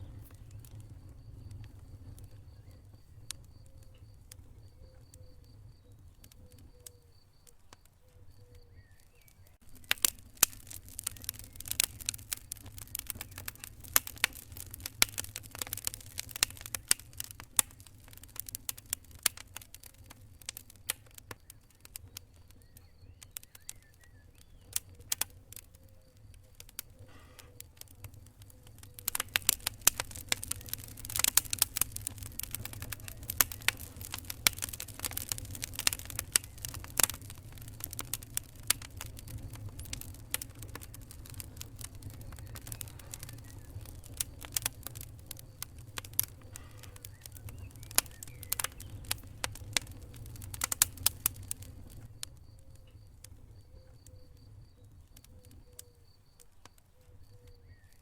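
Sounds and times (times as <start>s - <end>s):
low steady rumble: 0.0s - 4.8s
fire crackling: 0.0s - 58.0s.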